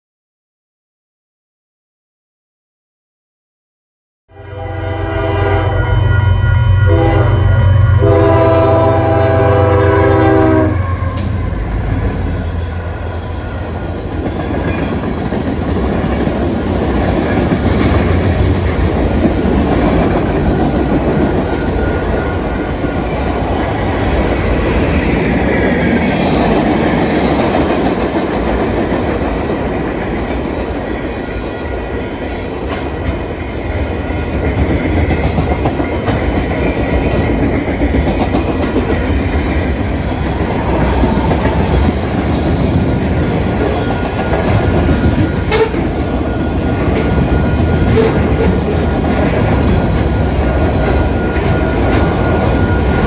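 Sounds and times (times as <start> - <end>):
locomotive horn: 4.3 - 14.1, 43.5 - 50.6
train wheels clickety-clack: 8.2 - 53.0.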